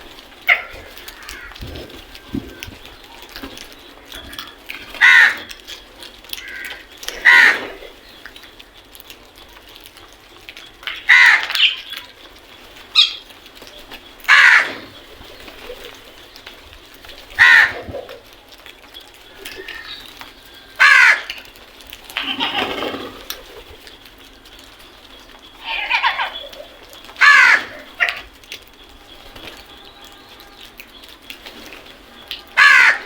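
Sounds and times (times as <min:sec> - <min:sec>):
crows cawing: 0:00.4 - 0:02.7, 0:04.1 - 0:05.7, 0:06.3 - 0:07.9, 0:10.8 - 0:12.2, 0:14.2 - 0:15.0, 0:17.2 - 0:18.2, 0:19.3 - 0:23.4, 0:25.6 - 0:28.5, 0:32.2 - 0:33.0.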